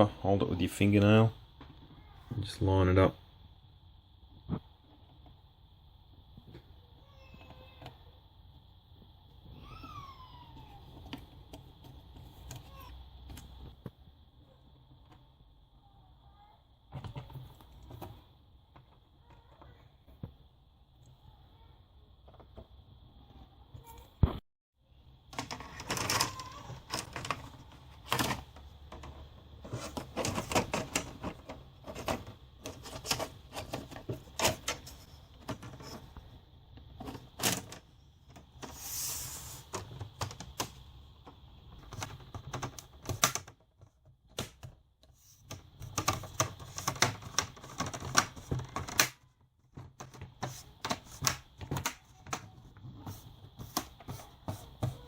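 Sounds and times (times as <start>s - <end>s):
short scraping hiss: 38.7s - 39.7s.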